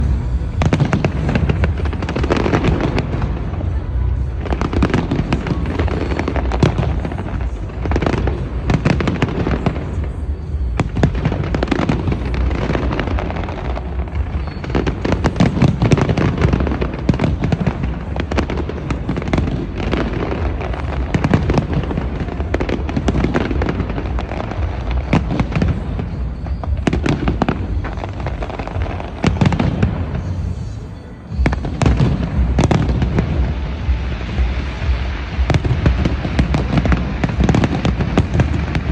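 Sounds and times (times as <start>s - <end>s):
deep rumbling booms: 0.0s - 9.6s
fireworks bangs and crackles: 0.0s - 38.9s.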